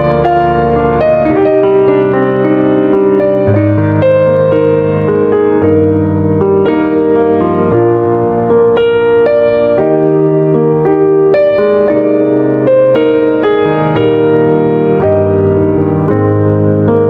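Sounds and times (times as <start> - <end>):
slow keyboard chords: 0.0 - 17.0.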